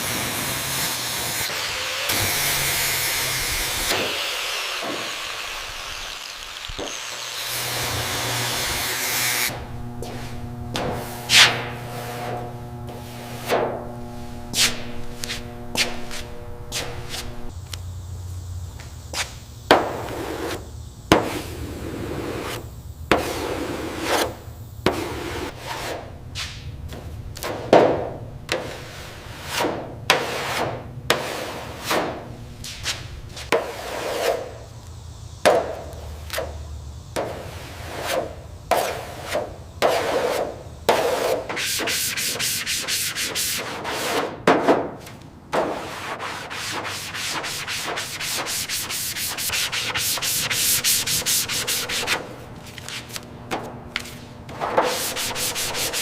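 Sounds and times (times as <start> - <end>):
abrasive rubbing on a surface: 10.0 - 17.5, 45.7 - 53.2, 54.5 - 56.0.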